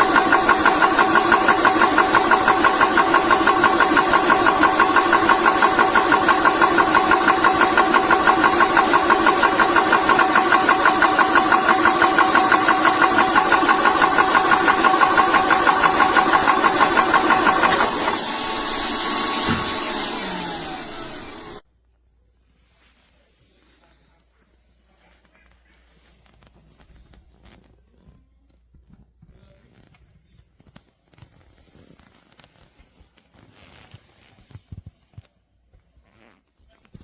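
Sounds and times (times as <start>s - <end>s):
air compressor pumping: 0.0s - 21.6s
motor whine winding down: 0.0s - 21.6s.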